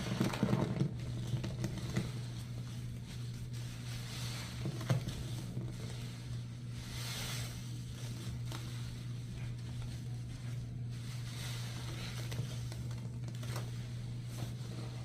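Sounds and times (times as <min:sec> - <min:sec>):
sponge squishing and crackling: 0:00.0 - 0:15.0
steady low hum: 0:00.0 - 0:15.0.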